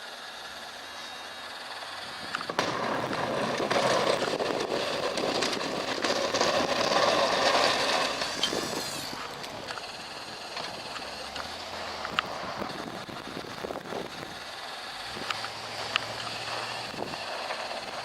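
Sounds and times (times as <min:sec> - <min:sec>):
plow truck rushing through snow: 0:00.0 - 0:18.0
sharp clicks: 0:09.3 - 0:13.9, 0:15.2 - 0:18.0.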